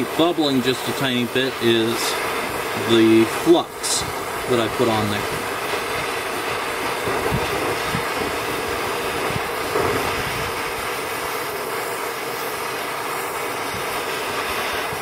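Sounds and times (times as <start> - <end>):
gas torch flame hissing: 0.0 - 15.0.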